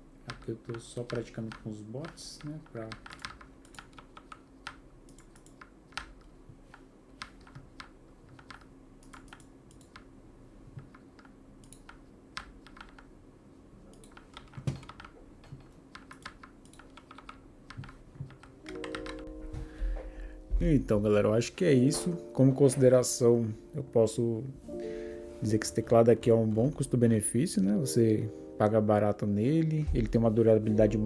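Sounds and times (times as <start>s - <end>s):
mechanical keyboard clicking: 0.3s - 10.1s, 10.8s - 13.1s, 13.9s - 19.3s.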